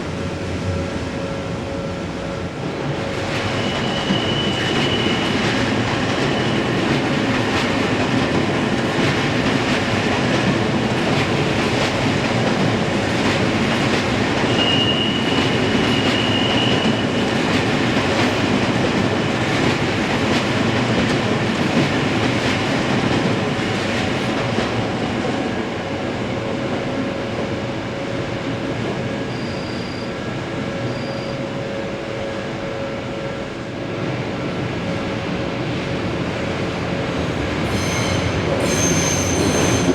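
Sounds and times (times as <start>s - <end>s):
high wheel squeal: 3.5s - 5.5s, 14.5s - 17.2s, 29.3s - 30.2s, 30.8s - 31.5s, 37.6s - 39.9s.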